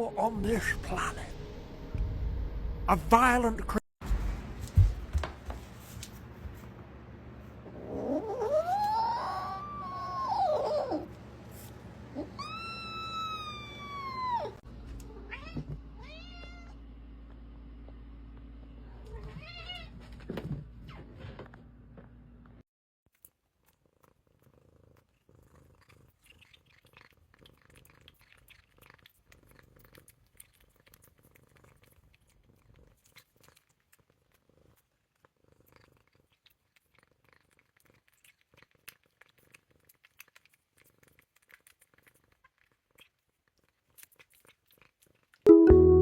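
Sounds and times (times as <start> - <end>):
cat purring: 23.7 - 45.5.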